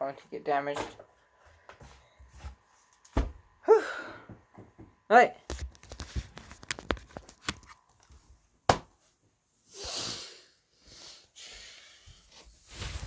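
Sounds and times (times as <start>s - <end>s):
person breathing: 3.6s - 4.4s, 9.7s - 12.4s.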